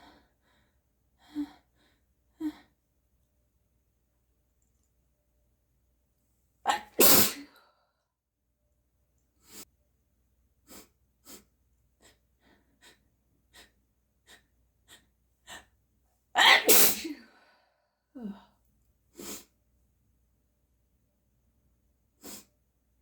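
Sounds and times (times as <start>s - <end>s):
person sneezing loudly: 6.7s - 7.6s, 16.4s - 17.3s.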